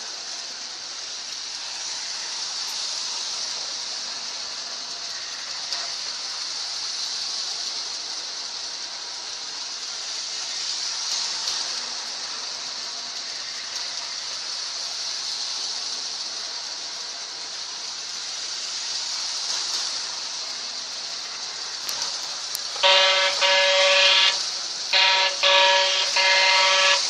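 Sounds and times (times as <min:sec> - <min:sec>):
model train running on track: 0:00.0 - 0:27.0
model train horn blasts: 0:22.7 - 0:27.0.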